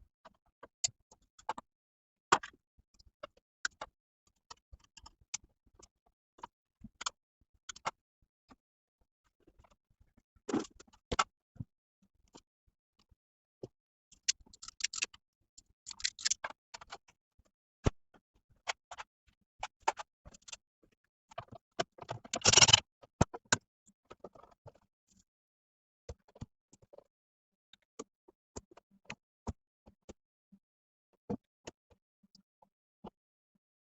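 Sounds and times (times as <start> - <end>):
light clicks and ticks: 14.2 - 15.2, 15.9 - 17.0.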